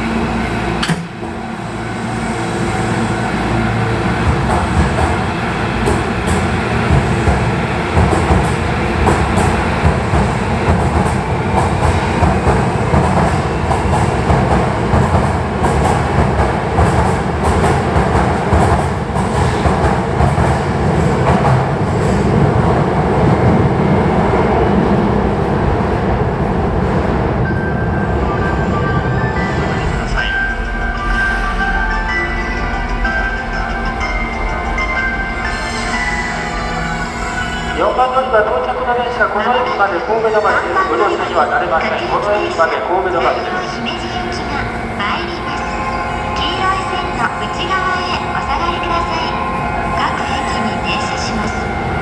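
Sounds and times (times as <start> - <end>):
electric train rumbling: 0.0 - 52.0
wheels clacking over rail joints: 4.2 - 22.7.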